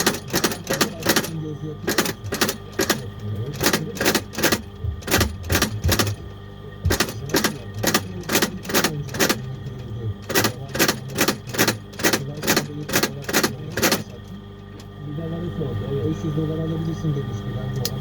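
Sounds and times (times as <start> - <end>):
low steady hum: 0.0 - 18.0
hammer tapping: 3.6 - 9.4.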